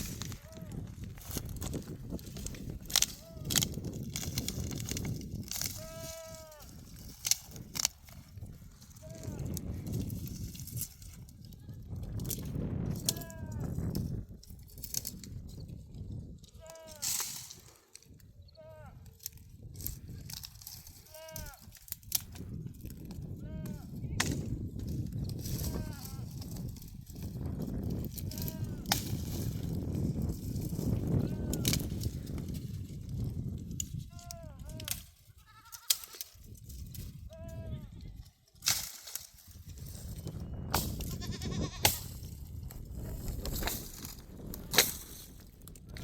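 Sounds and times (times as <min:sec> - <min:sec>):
livestock bleating: 0:05.7 - 0:06.8, 0:21.1 - 0:21.7, 0:25.6 - 0:26.3, 0:28.3 - 0:28.9, 0:31.2 - 0:31.8, 0:34.2 - 0:36.4, 0:41.0 - 0:41.9.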